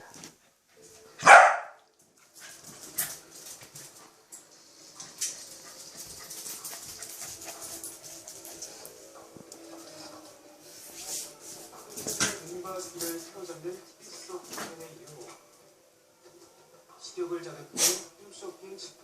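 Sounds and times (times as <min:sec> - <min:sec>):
dog sneezing: 0:17.7 - 0:18.1.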